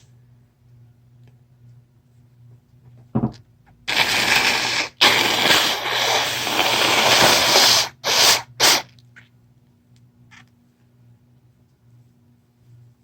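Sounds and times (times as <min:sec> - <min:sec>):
person blowing nose: 0:03.9 - 0:08.9.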